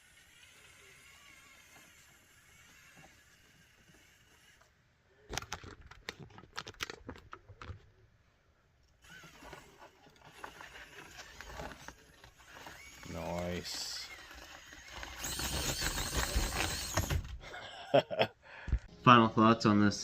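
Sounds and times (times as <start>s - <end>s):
rc car clattering over obstacle: 9.0s - 17.4s.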